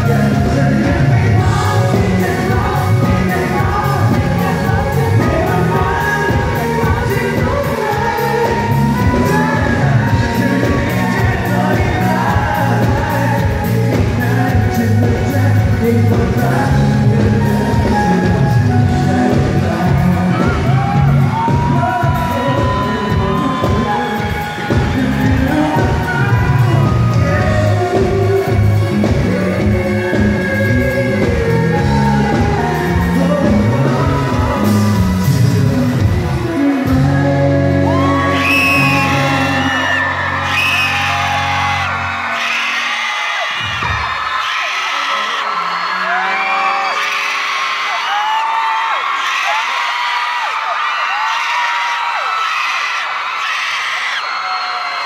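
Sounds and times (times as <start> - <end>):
man singing with live band: 0.0 - 42.5
crowd noise: 0.0 - 55.0.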